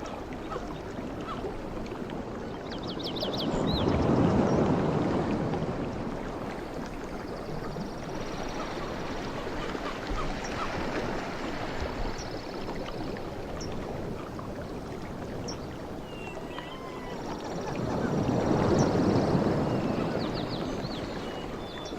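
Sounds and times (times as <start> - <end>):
sea waves washing: 3.4 - 21.9
whistled bird call: 16.1 - 18.1.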